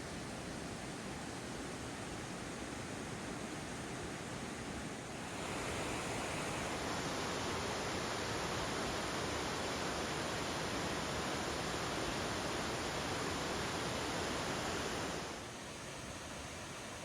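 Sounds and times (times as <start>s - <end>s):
flowing water rushing: 5.0s - 17.0s.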